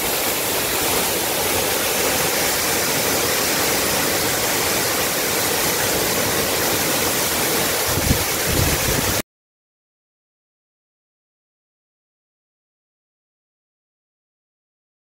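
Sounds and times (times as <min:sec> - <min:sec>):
waterfall rushing: 0:00.0 - 0:09.2.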